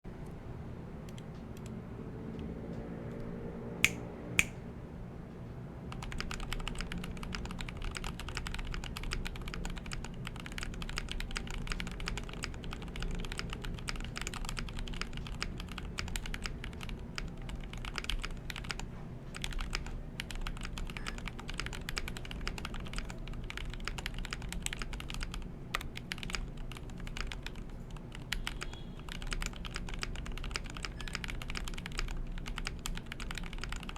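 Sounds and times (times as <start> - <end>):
loud sharp clicks: 3.9 - 4.6
typing on mechanical keyboard: 5.9 - 33.9.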